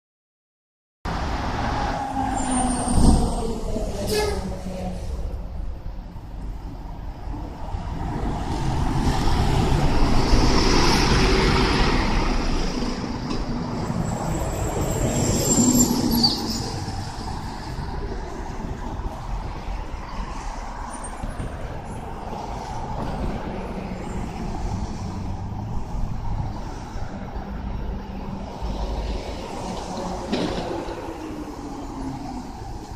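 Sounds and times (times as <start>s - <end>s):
road traffic: 1.1s - 32.9s
brakes squealing and hissing: 13.8s - 17.4s.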